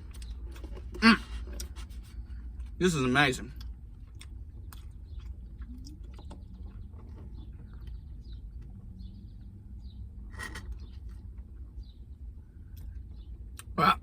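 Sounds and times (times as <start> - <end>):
chewing and mouth smacks: 0.0 - 2.8, 3.5 - 8.9
low background rumble: 0.0 - 14.0.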